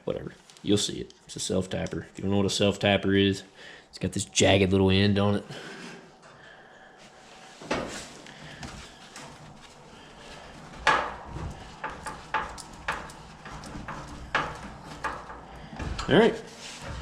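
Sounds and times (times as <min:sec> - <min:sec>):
sheet metal being handled: 0:07.2 - 0:17.0
screwdriver clicks and knocks: 0:10.8 - 0:16.1.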